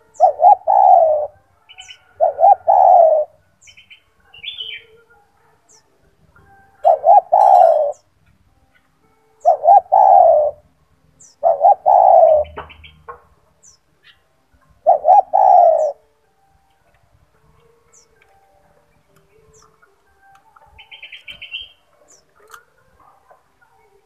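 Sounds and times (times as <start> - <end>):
dove cooing: 0.0 - 3.4, 4.3 - 8.1, 9.4 - 12.9, 14.6 - 16.0.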